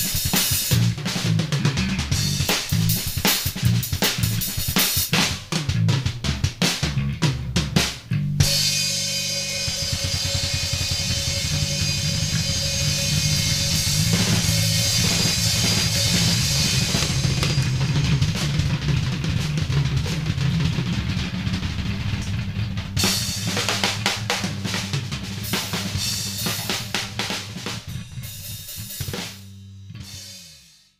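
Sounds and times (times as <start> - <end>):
drum rolls and fills: 0.0 - 30.7
held low bass notes: 0.7 - 30.6
cymbal crash: 8.4 - 18.7.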